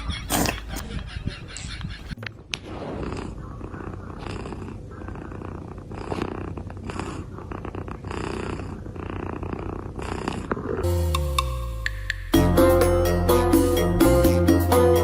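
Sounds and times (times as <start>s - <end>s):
cat purring: 2.7s - 10.8s.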